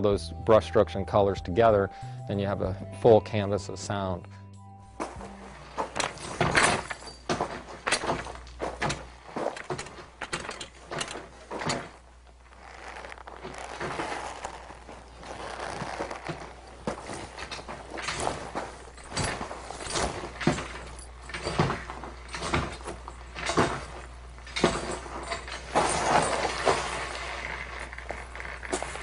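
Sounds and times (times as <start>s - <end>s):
rustling and scraping: 4.9s - 29.0s
sharp knocks and scuffs: 5.0s - 27.0s.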